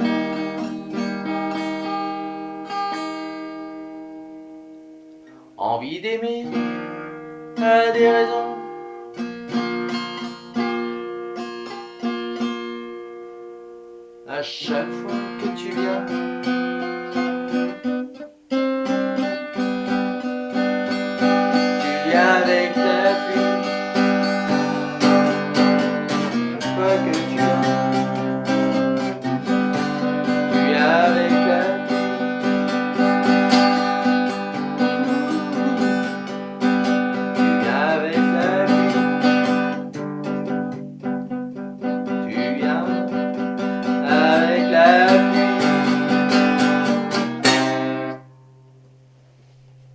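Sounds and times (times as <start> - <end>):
acoustic guitar chords: 0.0 - 49.9.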